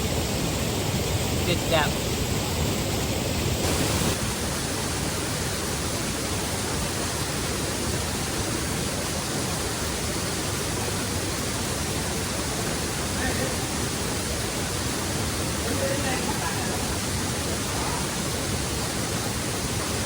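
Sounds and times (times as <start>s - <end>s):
waterfall rushing: 0.0s - 20.0s.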